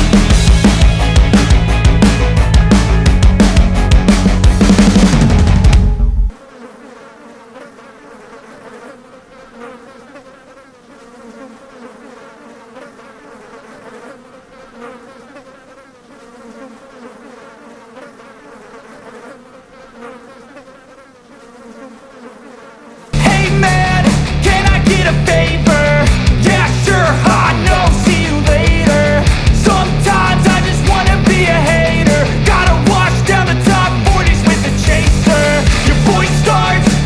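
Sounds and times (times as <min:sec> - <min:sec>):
loud rock music: 0:00.0 - 0:06.4, 0:23.2 - 0:37.0.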